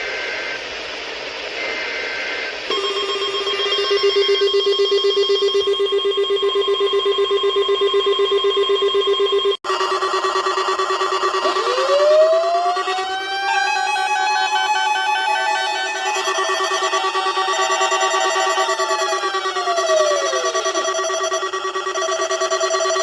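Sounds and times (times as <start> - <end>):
two-tone data warble: 0.0 - 0.8, 1.5 - 23.0
pulsing alert tone: 2.7 - 7.8, 9.7 - 23.0.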